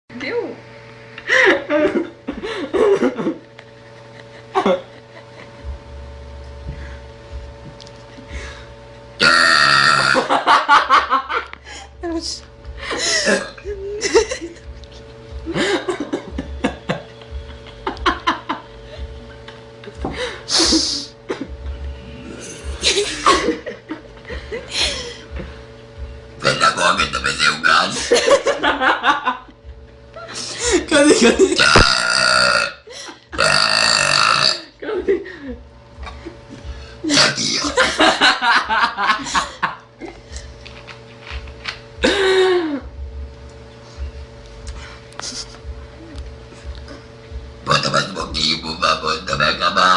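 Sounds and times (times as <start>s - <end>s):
faint steady hum: 0.1s - 49.9s
people laughing: 1.2s - 5.6s, 10.2s - 11.8s, 12.8s - 14.8s, 15.4s - 21.6s, 22.6s - 25.6s, 27.9s - 29.6s, 30.2s - 31.6s, 34.8s - 41.4s
girl belching: 9.2s - 10.3s, 13.2s - 13.6s, 31.5s - 32.8s, 33.4s - 34.7s.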